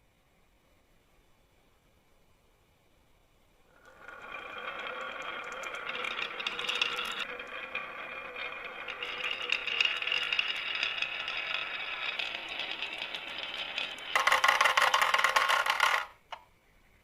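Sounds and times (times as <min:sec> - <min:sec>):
marbles rolling down wooden track: 0:03.8 - 0:16.4.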